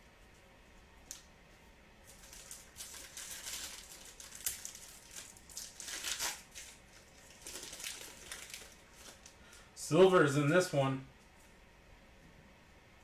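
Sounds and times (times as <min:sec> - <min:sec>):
foil wrapper tearing and crinkling: 0:02.0 - 0:09.4.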